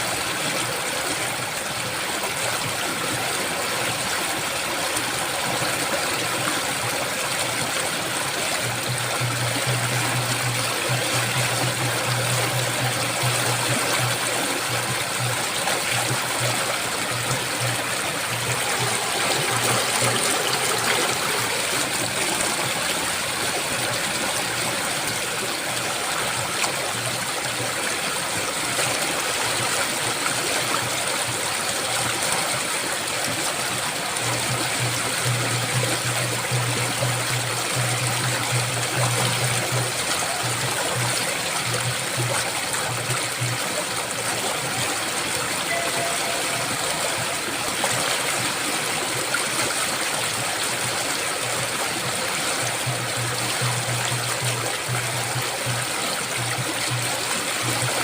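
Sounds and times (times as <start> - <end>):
water rushing: 0.0 - 58.0
low steady hum: 8.4 - 24.8, 34.1 - 44.8.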